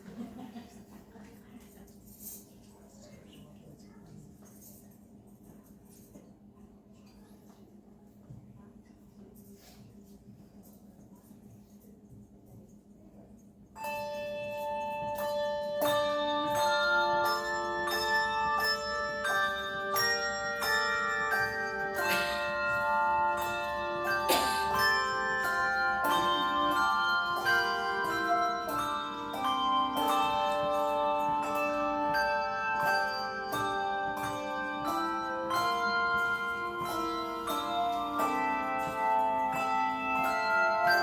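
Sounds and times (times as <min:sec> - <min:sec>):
handbell choir playing a hymn: 0:13.8 - 0:41.0.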